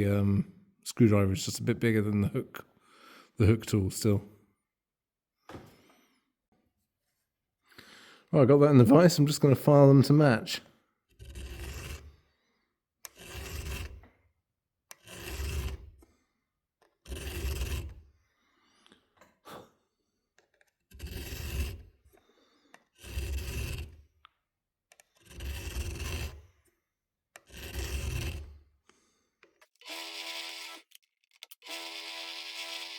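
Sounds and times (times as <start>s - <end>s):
hand file on metal: 11.0s - 12.3s, 13.0s - 14.1s, 14.9s - 16.0s, 17.0s - 18.1s, 20.4s - 24.1s, 24.9s - 26.6s, 27.3s - 28.7s.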